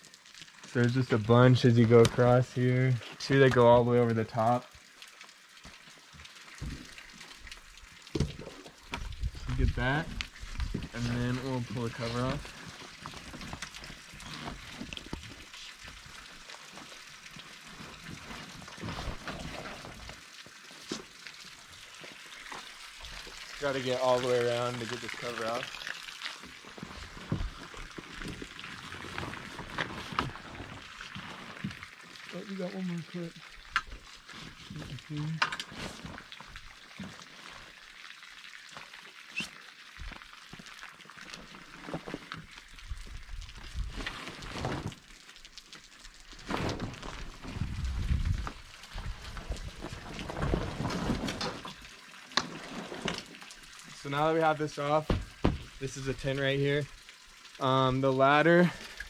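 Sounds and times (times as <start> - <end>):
heavy cover rustling and scraping: 17.8 - 20.2, 43.9 - 45.0, 46.4 - 51.8, 52.4 - 53.4.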